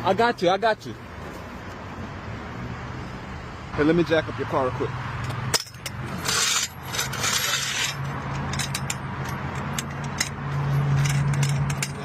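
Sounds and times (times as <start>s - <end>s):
metal tools clinking and scraping: 5.2s - 12.0s.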